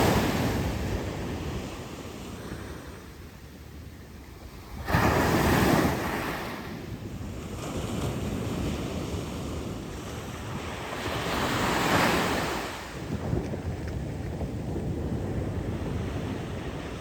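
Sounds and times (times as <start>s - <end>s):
waves breaking: 0.0s - 3.1s, 4.5s - 14.4s
wind buffeting microphone: 0.0s - 17.0s.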